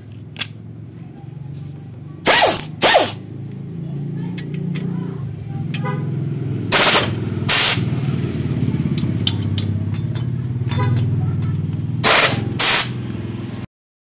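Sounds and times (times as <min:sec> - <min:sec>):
vehicle engine running: 0:00.0 - 0:13.7
loud hissing bursts: 0:06.7 - 0:07.9, 0:12.0 - 0:13.0.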